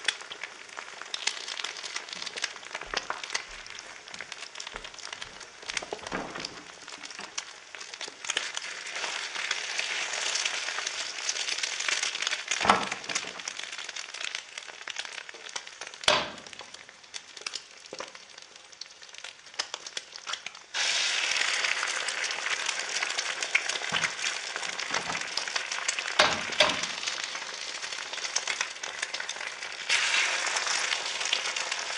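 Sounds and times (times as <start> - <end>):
egg frying sizzle: 0.0 - 31.9
fat popping: 16.0 - 16.8.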